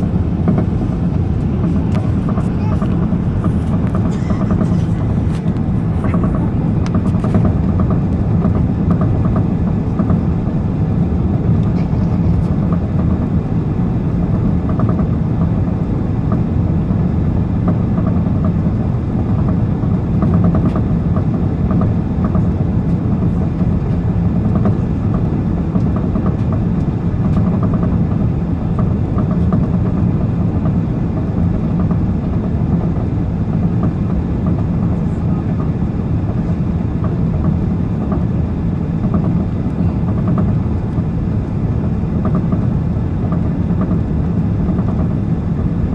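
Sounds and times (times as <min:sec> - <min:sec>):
airplane low rumble: 0:00.0 - 0:45.9.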